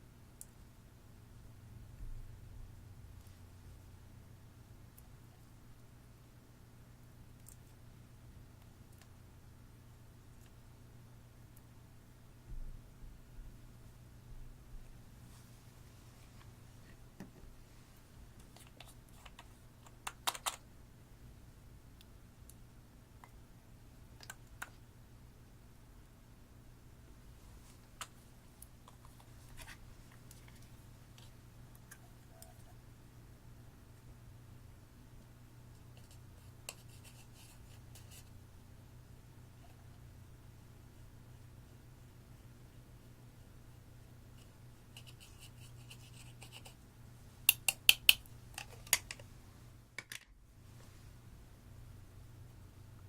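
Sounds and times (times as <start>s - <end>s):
low steady hum: 0.0s - 53.0s
faint small clicks and taps: 7.4s - 7.8s, 24.2s - 24.8s.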